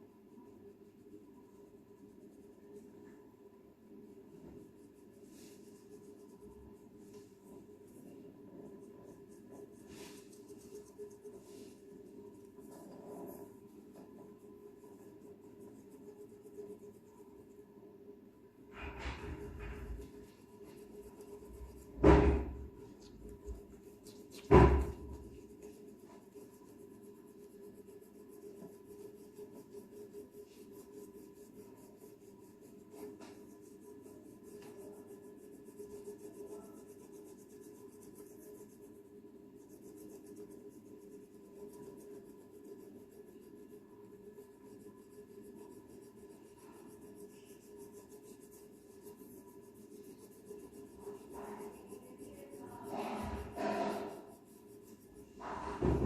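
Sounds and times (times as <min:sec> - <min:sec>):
crayon rubbing on paper: 0:04.7 - 0:17.6, 0:18.8 - 0:56.0
loud knocks: 0:22.0 - 0:22.6, 0:24.5 - 0:25.1, 0:55.4 - 0:56.0.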